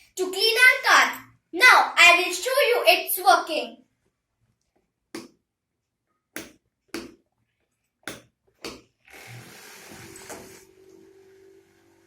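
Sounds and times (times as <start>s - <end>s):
small fan motor whirring: 9.1s - 12.0s.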